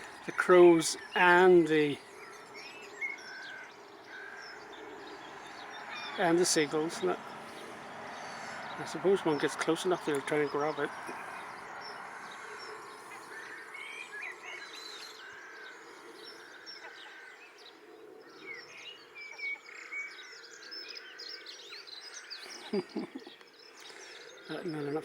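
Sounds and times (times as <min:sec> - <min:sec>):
birds chirping: 0:00.0 - 0:25.0.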